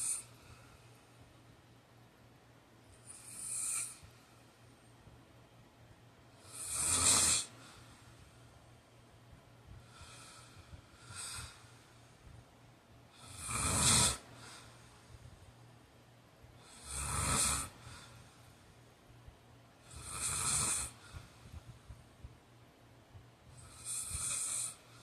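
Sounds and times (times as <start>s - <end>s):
man snoring: 0.0s - 0.4s, 3.0s - 4.1s, 6.4s - 7.7s, 13.1s - 14.7s, 16.6s - 18.1s, 19.8s - 21.0s, 23.6s - 24.9s.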